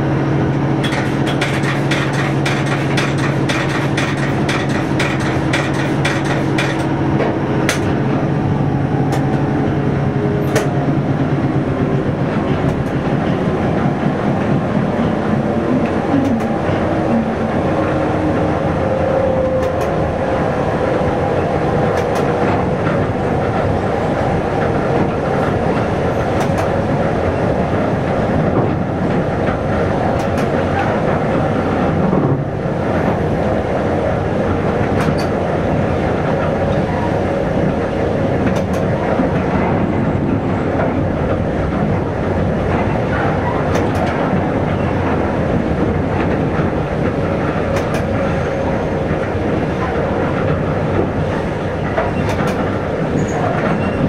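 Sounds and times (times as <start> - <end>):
train wheels rumbling: 0.0 - 54.0
clicks over rail joints: 0.8 - 8.0, 9.1 - 9.5, 10.4 - 10.8, 12.3 - 17.3, 19.5 - 20.0, 21.8 - 23.7, 24.6 - 26.9, 28.0 - 31.2, 34.7 - 35.4, 38.4 - 54.0.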